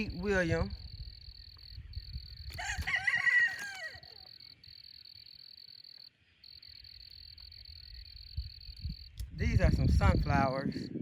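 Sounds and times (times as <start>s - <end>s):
insects trilling: 0.0s - 10.2s
rooster crowing: 2.5s - 4.5s.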